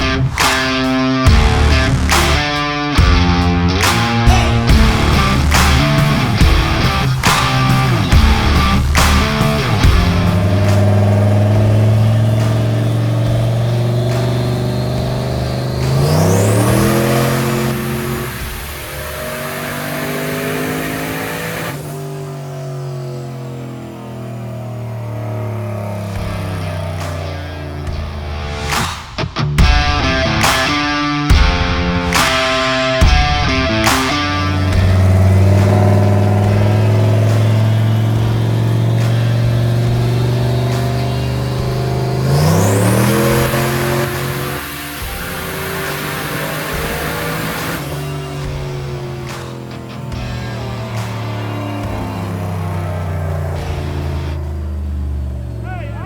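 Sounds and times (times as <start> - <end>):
broad rushing noise: 0.0 - 22.2
engine running at high revs: 0.0 - 56.0.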